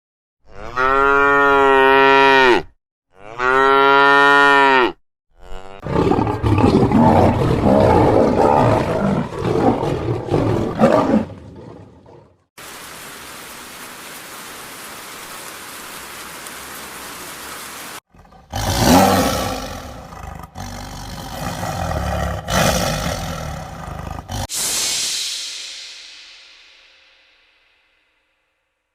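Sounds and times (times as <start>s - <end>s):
cow mooing: 0.5s - 7.1s
steady hiss: 12.6s - 18.0s, 23.9s - 27.9s
rough noisy animal sound: 18.1s - 24.5s.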